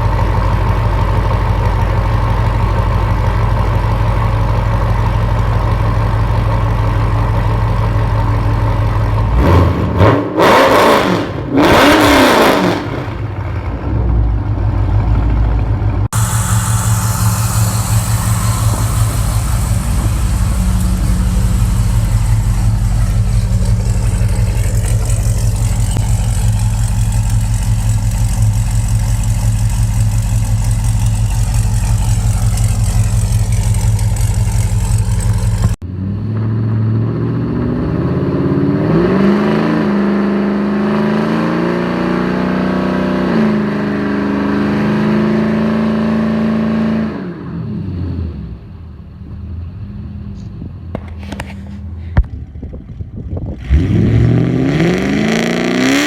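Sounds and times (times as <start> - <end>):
car engine idling: 0.0 - 10.1, 13.1 - 35.8
car engine revving: 7.8 - 47.1, 53.6 - 56.0.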